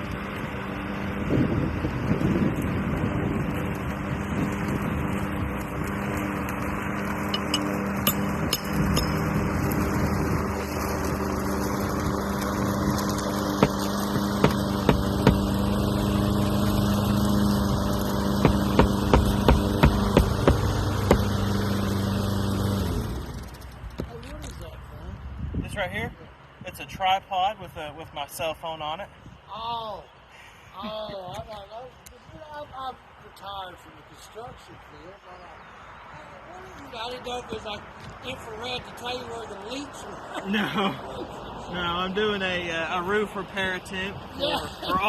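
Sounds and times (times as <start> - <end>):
engine-like hum: 0.0 - 45.0
sharp knocks: 13.6 - 15.5, 18.4 - 21.3.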